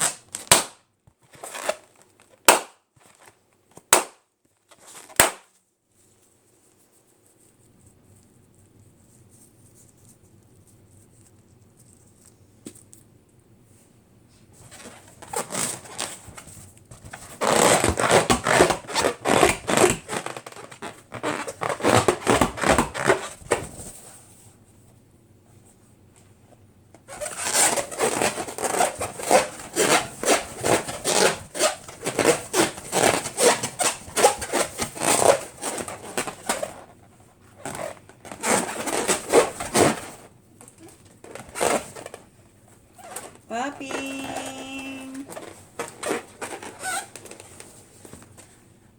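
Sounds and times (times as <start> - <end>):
rubber balloons rubbing: 14.6 - 24.2, 27.0 - 42.3, 42.9 - 48.0.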